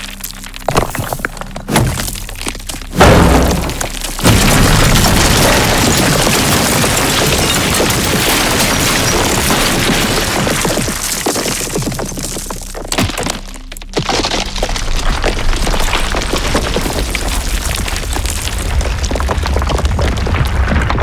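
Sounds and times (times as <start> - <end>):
stones and rubble tumbling: 0.0 - 21.0.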